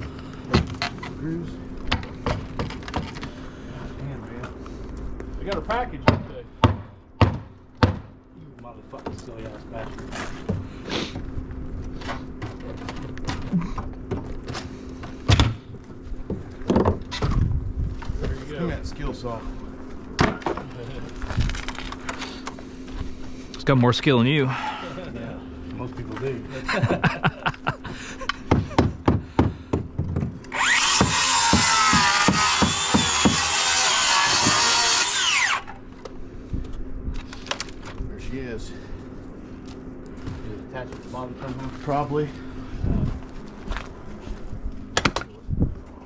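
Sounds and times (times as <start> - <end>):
steady low hum: 0.0 - 46.0
sharp knocks: 6.0 - 8.2
circular saw cutting wood: 30.5 - 35.8.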